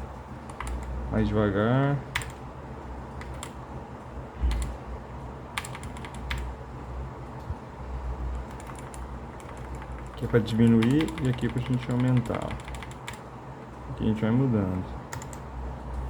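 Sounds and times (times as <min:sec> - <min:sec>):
mechanical keyboard key clicks: 0:08.5 - 0:13.0.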